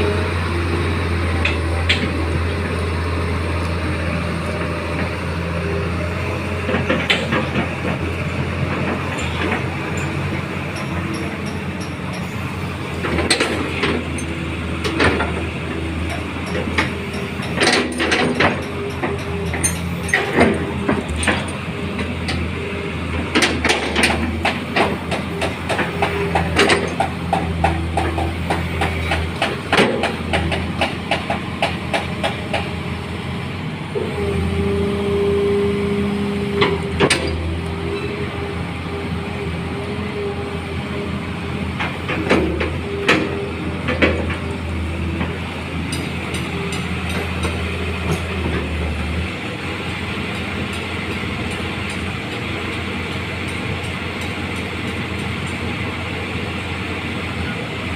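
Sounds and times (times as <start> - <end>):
excavator diesel engine running: 0.0 - 57.9
metallic clanks and knocks: 16.0 - 22.5, 23.3 - 32.7.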